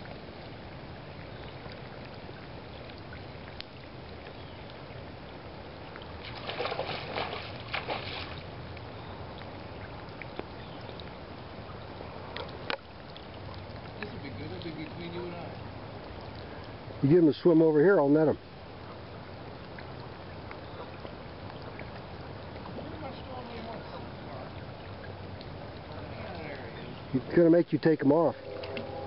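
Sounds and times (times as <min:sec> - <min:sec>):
creek water running: 0:00.0 - 0:29.0
splashing: 0:05.8 - 0:17.2, 0:19.5 - 0:29.0.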